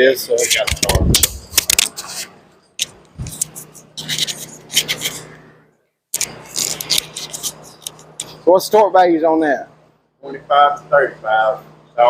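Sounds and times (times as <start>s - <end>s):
hand tools clicking and scraping: 6.2s - 8.4s.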